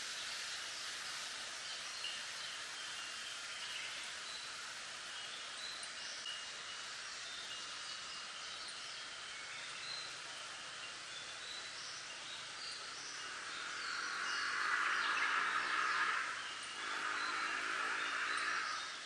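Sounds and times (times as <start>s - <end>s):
wind rustling bamboo leaves: 0.0s - 19.0s.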